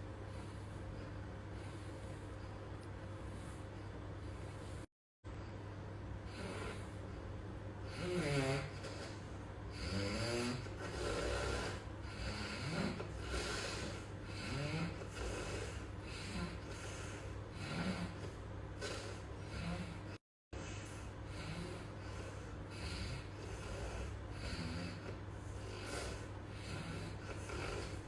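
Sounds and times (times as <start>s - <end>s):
steady low hum: 0.0s - 28.0s
man snoring: 6.3s - 7.0s, 7.8s - 20.2s, 21.2s - 28.0s.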